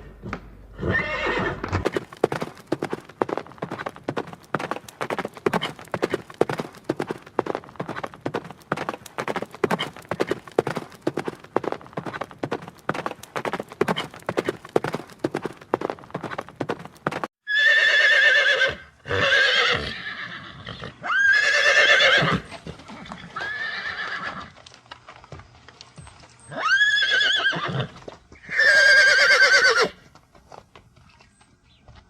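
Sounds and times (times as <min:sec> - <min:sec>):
horses whinnying: 0:00.7 - 0:03.9, 0:17.5 - 0:24.6, 0:26.4 - 0:30.0
hooves clip-clopping: 0:01.0 - 0:17.3, 0:22.0 - 0:32.0.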